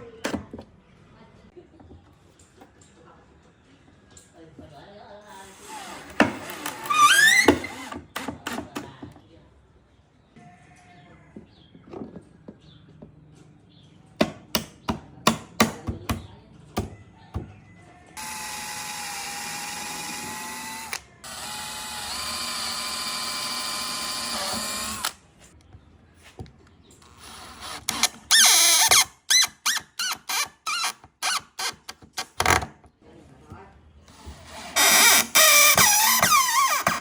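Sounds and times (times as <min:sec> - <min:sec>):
electric drill running: 0:05.5 - 0:08.7, 0:18.2 - 0:25.2, 0:27.1 - 0:31.4, 0:34.1 - 0:37.0.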